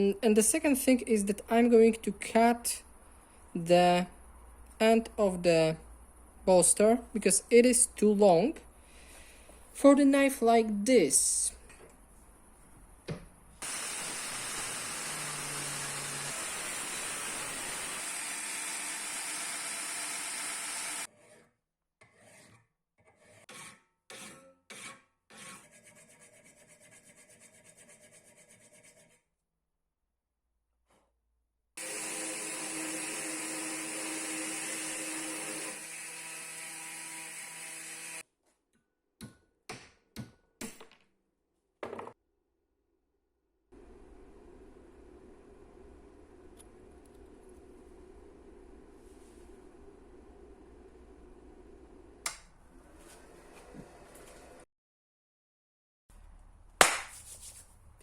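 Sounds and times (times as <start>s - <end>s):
abrasive tool grinding steel: 13.6s - 21.1s, 31.8s - 38.2s.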